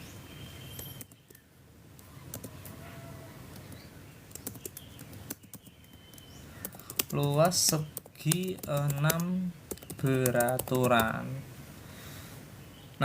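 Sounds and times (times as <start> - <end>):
computer keyboard clicks: 2.3 - 2.5, 3.5 - 11.2.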